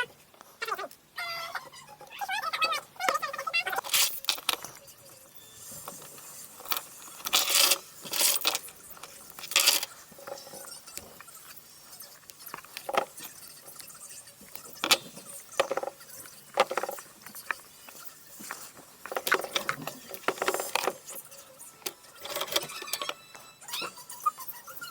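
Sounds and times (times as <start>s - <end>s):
scraping and handling noises: 3.1s - 5.0s, 5.6s - 23.9s.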